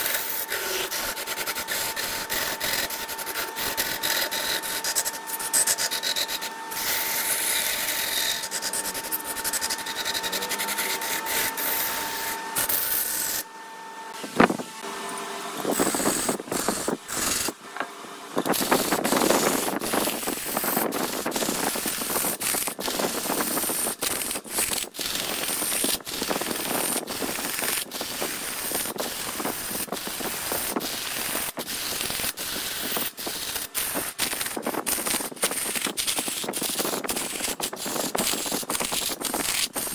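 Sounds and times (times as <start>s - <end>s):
tool scraping spinning wood: 0.0s - 13.5s, 14.1s - 39.9s
lathe motor whine: 0.0s - 23.8s.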